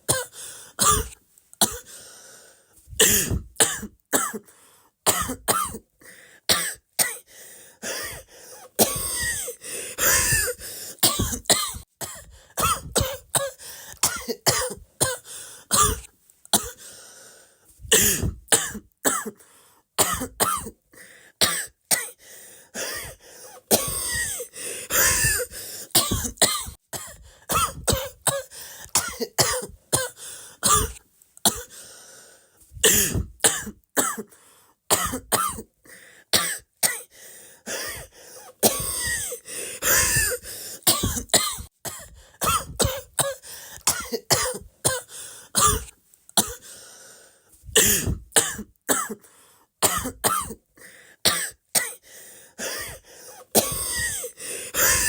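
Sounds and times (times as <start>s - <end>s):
person coughing: 0.0s - 1.9s, 3.0s - 4.5s, 5.1s - 5.9s, 6.5s - 16.8s, 17.9s - 19.4s, 20.0s - 20.8s, 22.8s - 31.8s, 32.8s - 34.3s, 34.9s - 35.7s, 37.7s - 46.7s, 47.7s - 49.2s, 49.8s - 50.6s, 52.6s - 55.0s.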